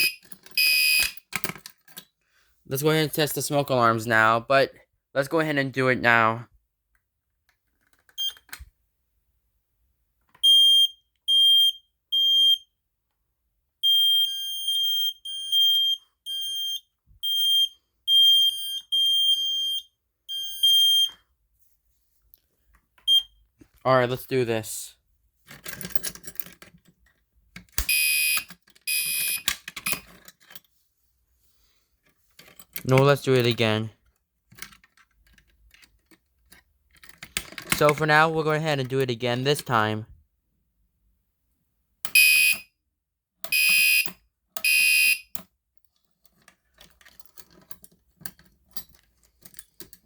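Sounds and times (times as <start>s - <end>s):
smoke alarm beeps: 0.0s - 1.2s, 10.4s - 12.7s, 13.8s - 21.1s, 23.1s - 23.4s, 27.9s - 29.4s, 42.1s - 42.7s, 43.5s - 45.3s
handling clicks and knocks: 0.2s - 2.1s, 25.4s - 30.7s, 32.0s - 38.1s, 45.3s - 50.0s.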